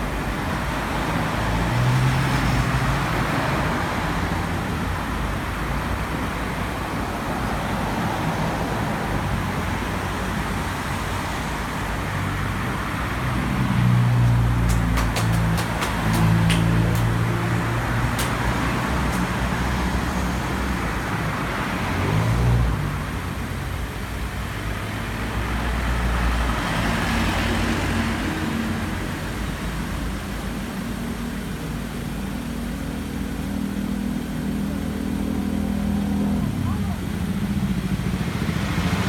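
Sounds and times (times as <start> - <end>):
road traffic noise: 0.0 - 39.0
vehicle engine running: 11.9 - 21.5, 28.7 - 39.0.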